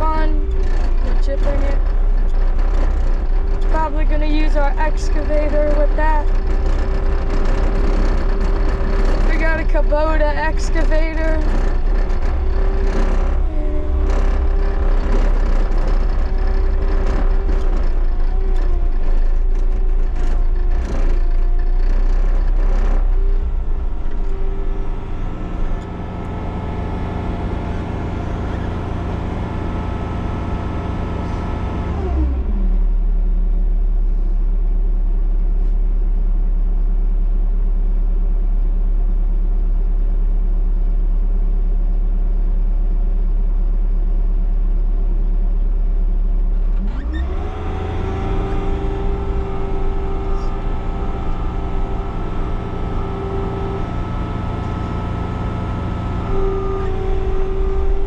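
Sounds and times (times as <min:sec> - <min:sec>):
knocks and clatter: 0:00.0 - 0:29.4
diesel engine running: 0:00.0 - 0:58.0.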